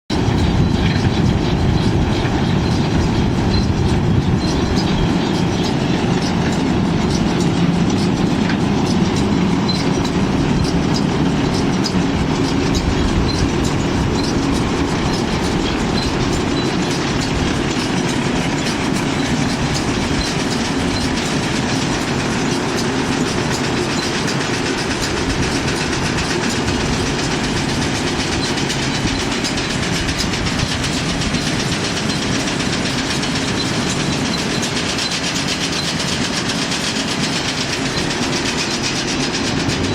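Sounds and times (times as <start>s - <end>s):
baler mechanical clatter: 0.1s - 39.9s.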